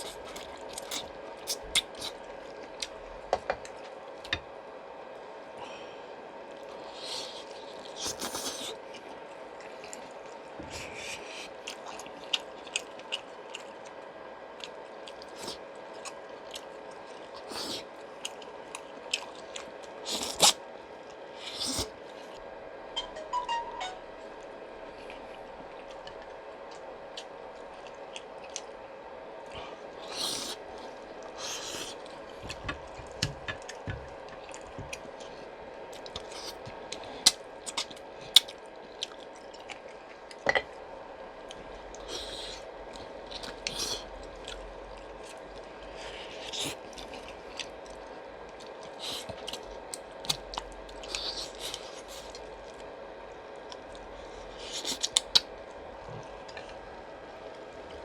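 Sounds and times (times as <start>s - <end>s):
person chewing soup: 0.0s - 4.3s, 6.6s - 22.4s, 25.0s - 58.0s
faint steady hum: 0.0s - 58.0s.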